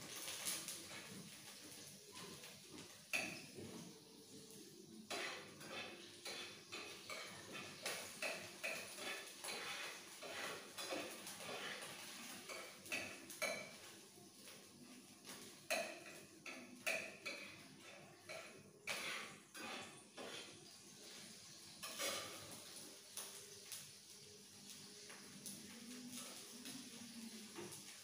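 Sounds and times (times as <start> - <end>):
metal utensil scraping a pan: 5.0 - 13.8, 15.7 - 22.8.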